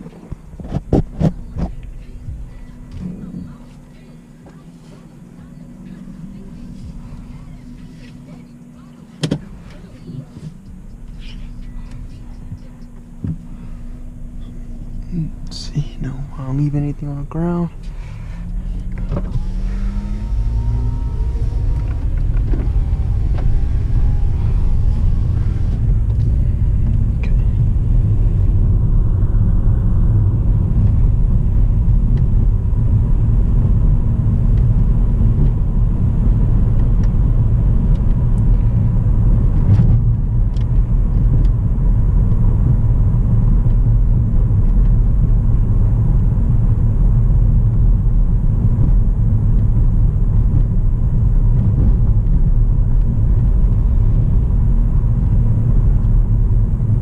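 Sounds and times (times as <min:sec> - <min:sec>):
car engine accelerating: 0:00.0 - 0:57.0
tyre and wind rumble: 0:17.8 - 0:57.0.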